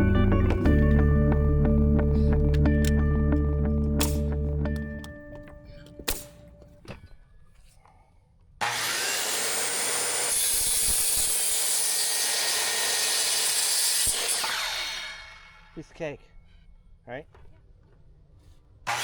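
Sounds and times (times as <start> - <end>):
power saw cutting wood: 8.6 - 16.1.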